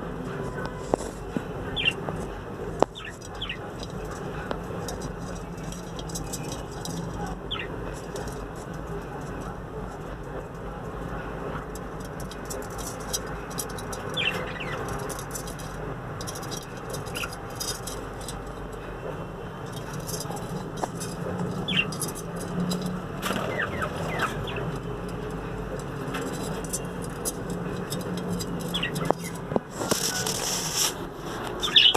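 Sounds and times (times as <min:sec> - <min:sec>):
low background hum: 0:00.0 - 0:31.9
budgerigars chirping: 0:02.9 - 0:03.7, 0:21.6 - 0:22.0.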